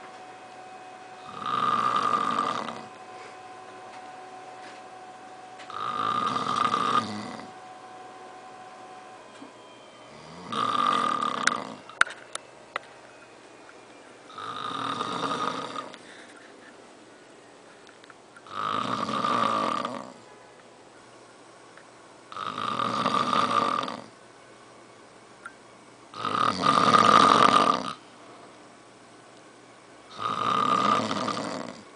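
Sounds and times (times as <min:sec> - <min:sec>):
man snoring: 0:01.2 - 0:03.0, 0:05.7 - 0:07.6, 0:10.1 - 0:11.9, 0:14.3 - 0:15.9, 0:18.5 - 0:20.2, 0:22.3 - 0:24.2, 0:26.1 - 0:28.0, 0:30.1 - 0:31.9.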